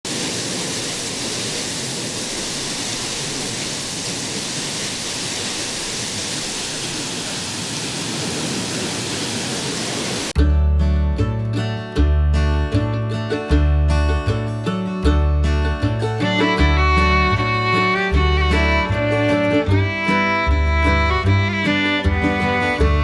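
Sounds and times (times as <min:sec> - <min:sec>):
rushing water: 0:00.0 - 0:10.4, 0:15.8 - 0:23.0
acoustic guitar music: 0:10.4 - 0:23.0.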